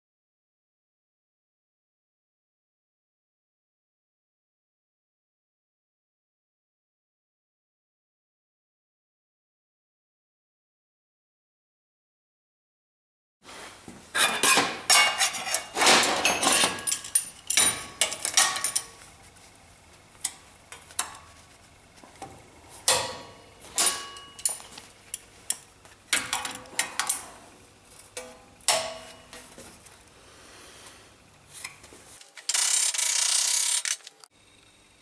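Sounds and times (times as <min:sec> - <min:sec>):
sheet steel clinking and clanking: 0:14.1 - 0:19.1, 0:22.2 - 0:24.8, 0:28.1 - 0:29.7.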